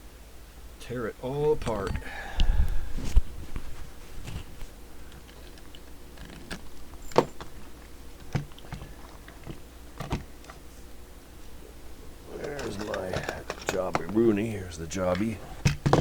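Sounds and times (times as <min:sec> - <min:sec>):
parts and tools clicking: 0:04.3 - 0:10.6, 0:12.3 - 0:16.0.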